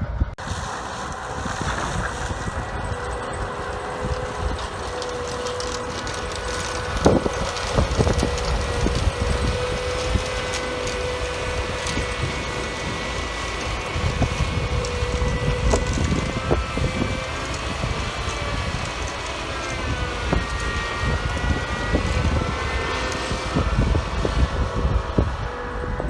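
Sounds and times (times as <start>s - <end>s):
farm machinery engine rumble: 0.0s - 26.0s
machinery whine: 0.0s - 26.0s.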